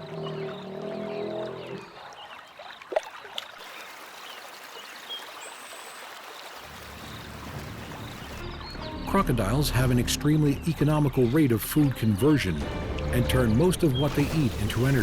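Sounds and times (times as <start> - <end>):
water trickling and lapping: 0.0 - 15.0
small sharp water splashes: 1.8 - 8.9.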